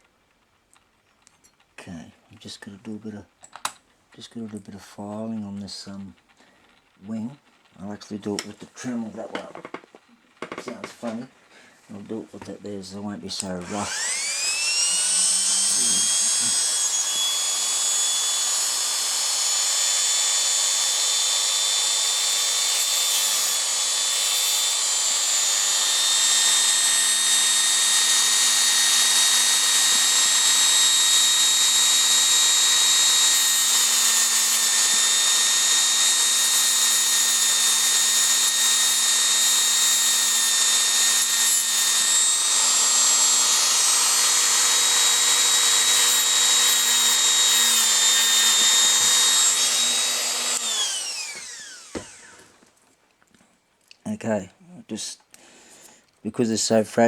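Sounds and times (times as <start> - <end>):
rotary tool whining: 13.4 - 52.6.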